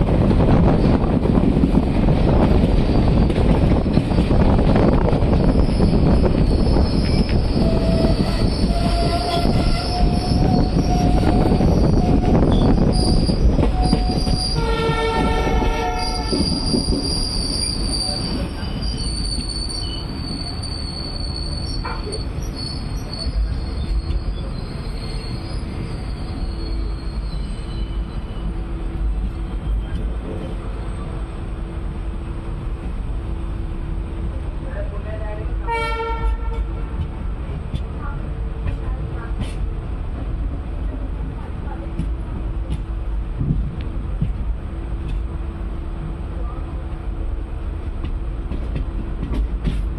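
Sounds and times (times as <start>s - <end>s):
train rumbling on rails: 0.0s - 49.9s
train wheels squealing: 2.7s - 4.4s, 5.3s - 14.8s, 15.8s - 28.6s, 29.5s - 31.1s
train horn: 7.6s - 12.6s, 13.7s - 16.6s, 35.6s - 36.8s.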